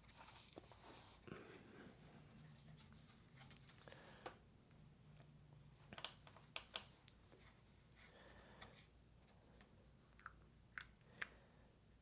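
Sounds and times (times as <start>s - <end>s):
faint sharp clicks and taps: 5.9s - 7.5s.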